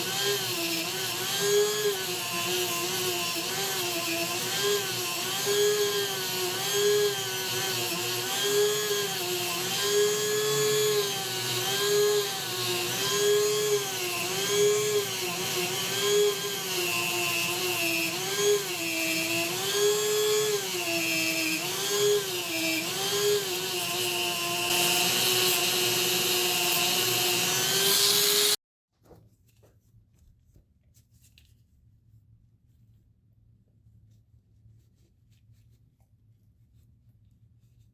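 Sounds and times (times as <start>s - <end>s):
electric power tool whining: 0.0s - 28.6s
faint handling sounds: 28.9s - 37.9s.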